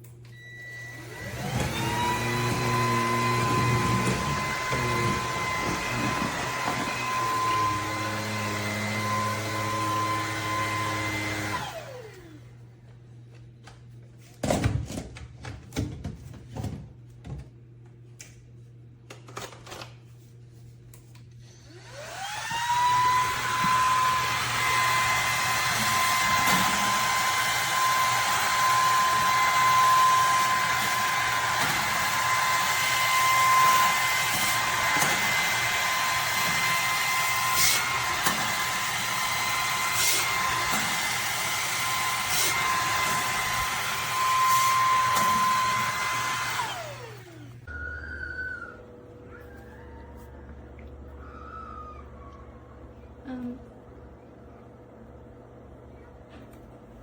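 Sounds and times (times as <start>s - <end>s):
vacuum motor whining: 0.2s - 12.6s, 21.4s - 53.5s.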